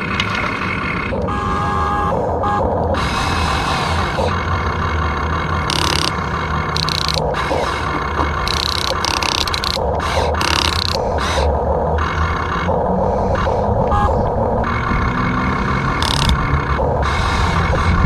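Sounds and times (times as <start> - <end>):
low hum: 0.0 - 18.0
small electric motors whirring: 5.6 - 14.1, 14.7 - 17.9.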